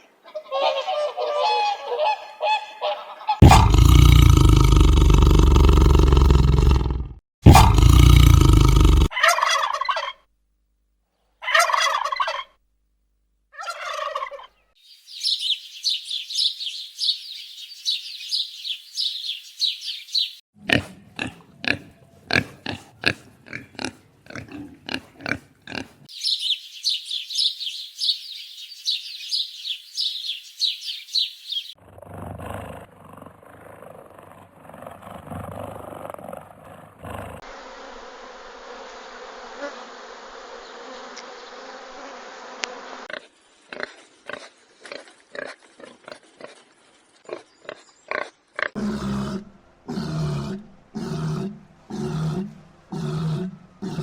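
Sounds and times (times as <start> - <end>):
animal calls: 0.2 - 10.2, 48.1 - 54.0
low animal grunts: 3.4 - 9.1, 20.6 - 26.1, 31.8 - 37.4, 47.3 - 54.0.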